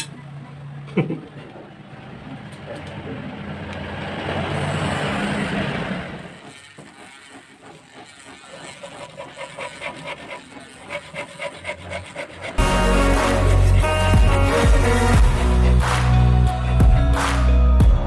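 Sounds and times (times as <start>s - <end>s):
rotary tool grinding wood: 4.5s - 17.6s.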